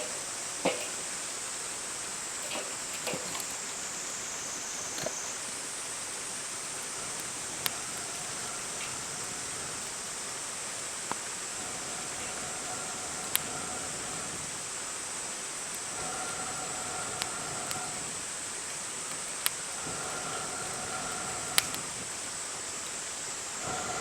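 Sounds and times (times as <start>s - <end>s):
campfire hissing: 0.0s - 24.0s
fire pops and crackles: 4.9s - 24.0s.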